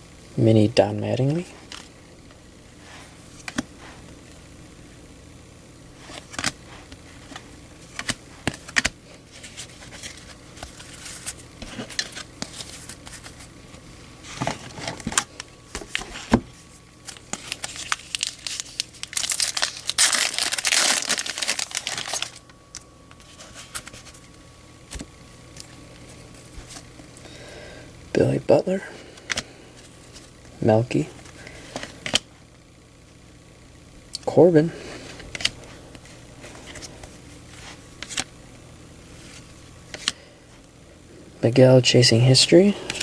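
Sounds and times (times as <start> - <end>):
foil wrapper crinkling and tearing: 17.0 - 24.1.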